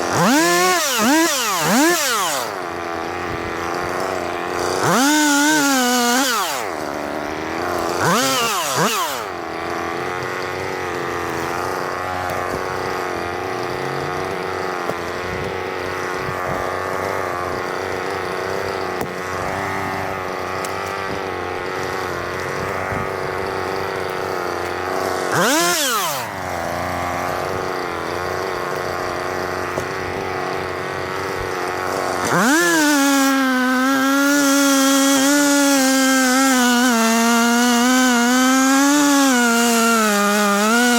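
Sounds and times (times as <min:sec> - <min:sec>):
chainsaw revving: 0:00.0 - 0:40.9.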